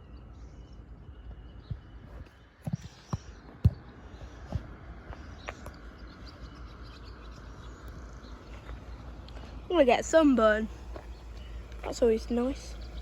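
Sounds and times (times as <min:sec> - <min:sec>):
low rumble: 0:03.5 - 0:13.0.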